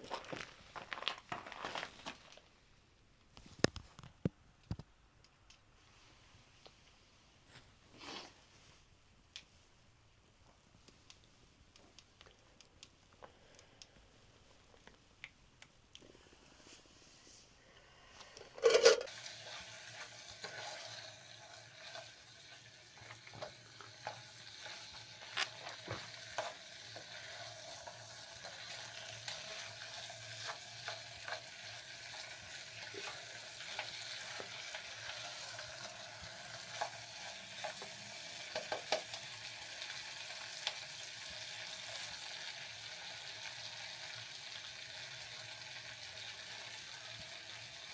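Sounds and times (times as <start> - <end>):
food sizzling in a pan: 19.1 - 47.9
stirring clicks and scrapes: 21.8 - 35.6.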